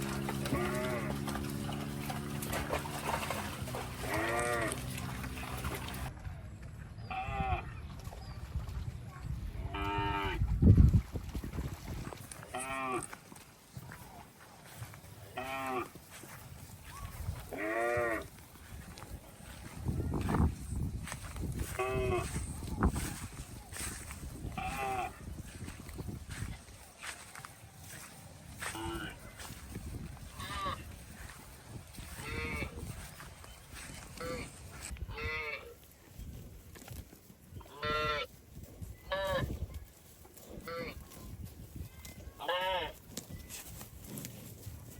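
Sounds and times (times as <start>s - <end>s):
cattle mooing: 0.0s - 6.1s, 15.4s - 15.9s, 17.5s - 18.3s.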